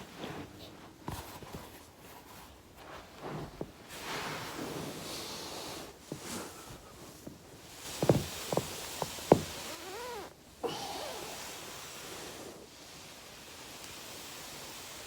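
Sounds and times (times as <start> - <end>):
body rustling on foam roller: 0.0 - 10.4.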